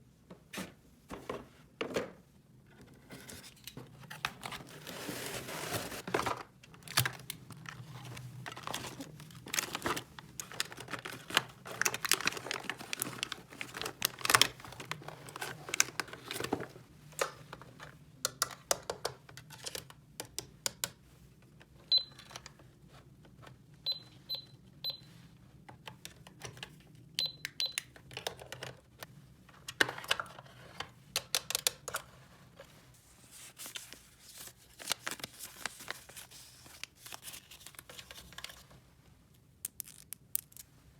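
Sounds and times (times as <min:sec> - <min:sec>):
plastic packaging crinkling: 0:04.3 - 0:16.7.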